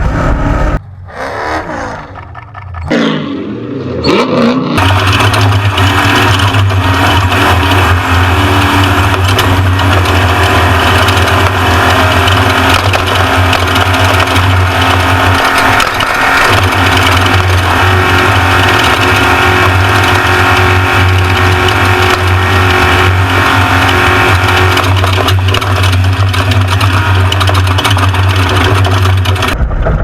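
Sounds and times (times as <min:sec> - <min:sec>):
loud rush of noise: 0:00.0 - 0:01.2
truck engine running hard: 0:00.0 - 0:30.0.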